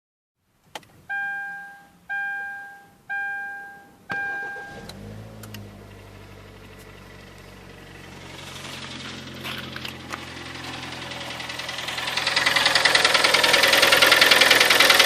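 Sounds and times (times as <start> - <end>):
dashboard warning chime: 1.1 - 5.0
car engine starting and idling: 3.0 - 15.0.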